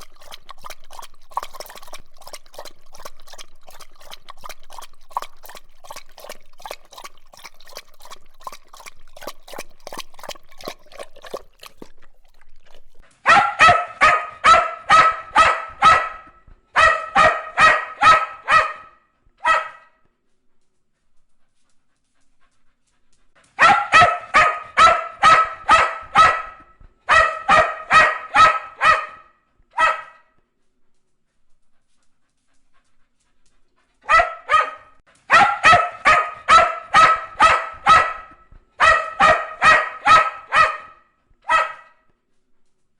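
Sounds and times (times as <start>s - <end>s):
dog lapping water: 0.0s - 18.8s, 21.4s - 29.3s, 31.8s - 41.6s
dog barking rapidly: 12.7s - 19.9s, 23.6s - 30.3s, 34.0s - 42.0s.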